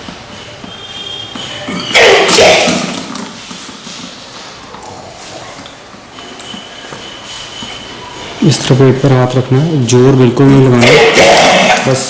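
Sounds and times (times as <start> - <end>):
person gagging and vomiting: 1.7 - 3.4.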